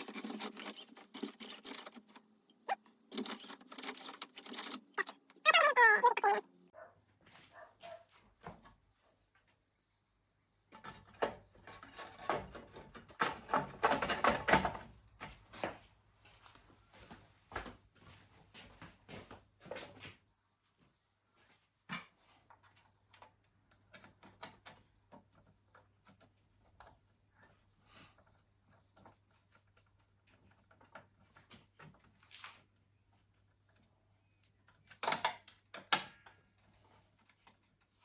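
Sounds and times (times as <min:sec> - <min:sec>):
clicks and knocks of small parts: 0:00.0 - 0:06.4, 0:34.7 - 0:36.3.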